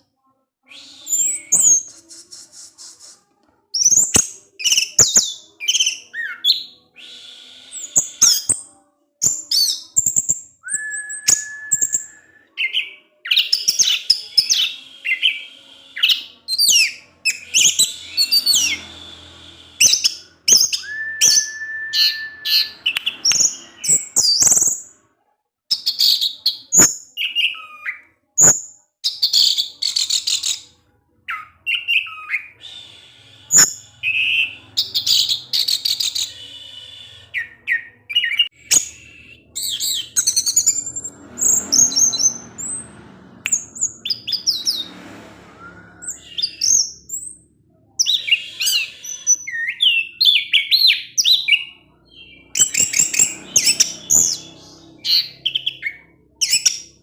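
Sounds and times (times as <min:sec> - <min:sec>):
thrush singing: 0:00.7 - 0:25.1, 0:30.5 - 0:50.5.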